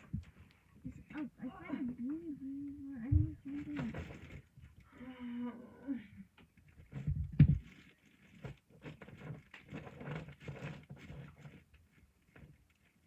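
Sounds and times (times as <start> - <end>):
soft heavy thumps: 3.0 - 4.4.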